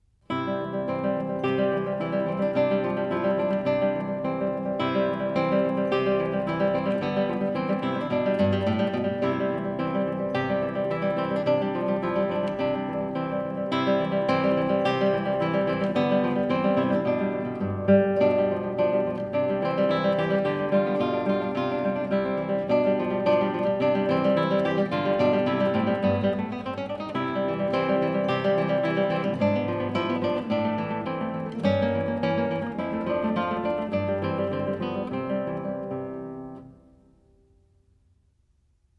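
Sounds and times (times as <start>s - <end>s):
acoustic guitar playing: 0.0s - 37.8s.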